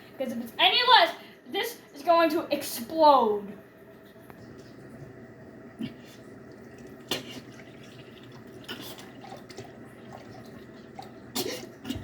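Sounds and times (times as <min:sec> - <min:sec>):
liquid trickling into a cup: 0:06.4 - 0:11.8.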